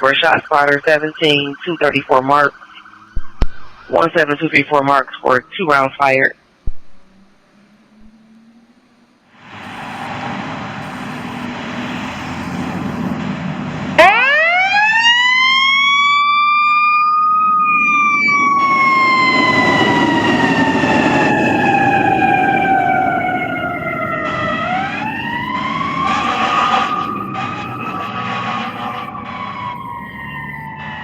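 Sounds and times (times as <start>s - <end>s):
fire engine siren: 0.0s - 5.0s, 7.1s - 31.0s
truck rumbling on road: 6.9s - 14.7s, 18.0s - 31.0s.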